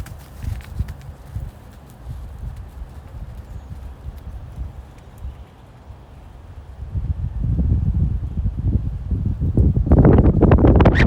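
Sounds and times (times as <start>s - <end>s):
horse hoofbeats: 0.0s - 5.6s
wind buffeting microphone: 0.0s - 11.0s.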